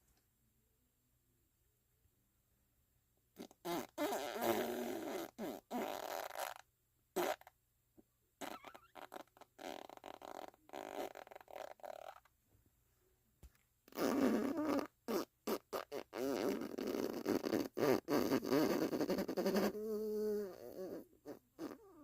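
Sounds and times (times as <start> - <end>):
fart sounds: 3.4 - 6.6, 7.2 - 7.5, 8.4 - 12.3, 13.9 - 22.0.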